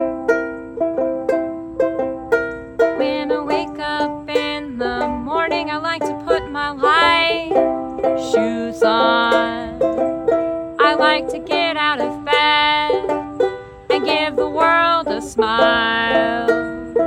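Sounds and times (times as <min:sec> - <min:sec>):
banjo-ukulele picking chords: 0:00.0 - 0:17.0
person singing: 0:03.0 - 0:10.0, 0:10.8 - 0:13.2, 0:13.9 - 0:17.0.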